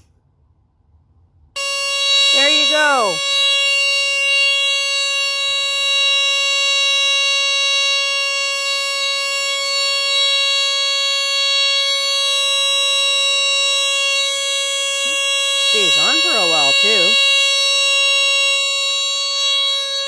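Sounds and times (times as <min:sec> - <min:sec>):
smoke detector alarm tone: 0:01.6 - 0:20.0.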